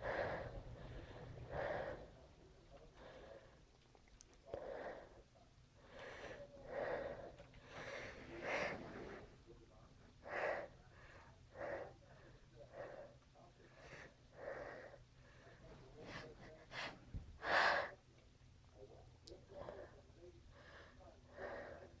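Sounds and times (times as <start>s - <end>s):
person wheezy breaths and sniffs: 12.6s - 18.0s.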